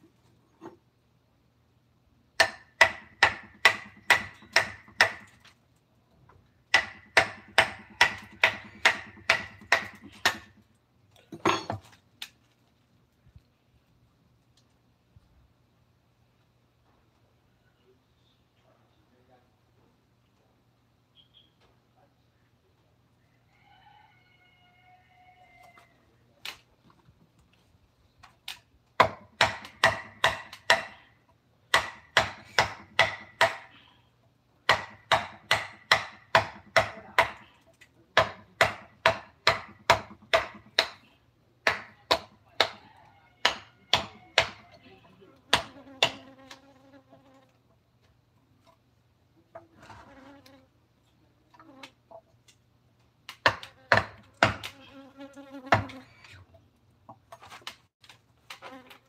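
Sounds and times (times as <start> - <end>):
mallet striking chisel into wood: 2.4 - 5.3, 6.7 - 10.5, 29.0 - 31.0, 31.7 - 33.7, 34.7 - 37.4, 38.2 - 41.0, 41.6 - 42.8, 43.4 - 44.6, 53.4 - 54.7.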